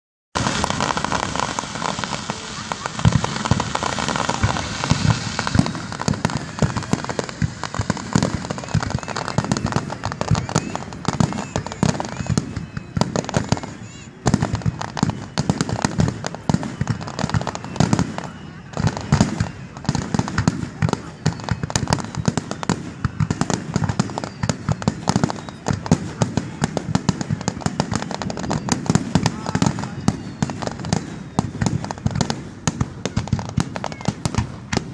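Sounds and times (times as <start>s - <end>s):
fireworks bangs: 0.4s - 34.9s
fireworks crackle: 0.4s - 34.9s.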